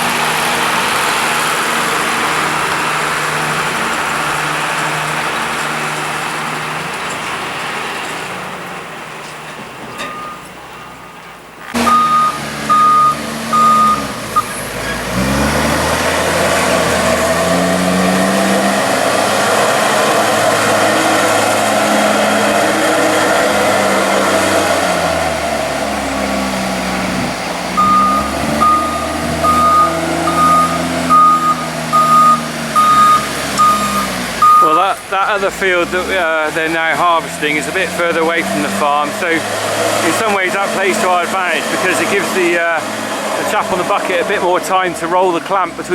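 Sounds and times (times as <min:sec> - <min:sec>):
diesel engine under load: 0:00.0 - 0:45.9
reversing alarm beeping: 0:10.1 - 0:10.5, 0:11.8 - 0:14.6, 0:27.8 - 0:34.8.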